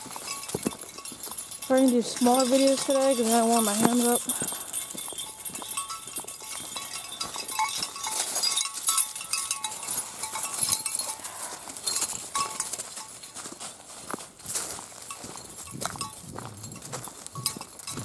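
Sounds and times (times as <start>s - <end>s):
faint tinkling tones: 0.0s - 13.5s
footsteps on a trail: 0.0s - 18.0s.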